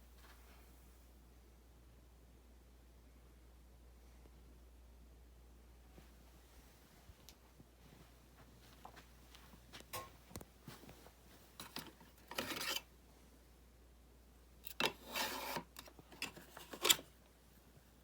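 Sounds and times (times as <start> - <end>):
short rubbing scrapes: 14.9 - 15.7.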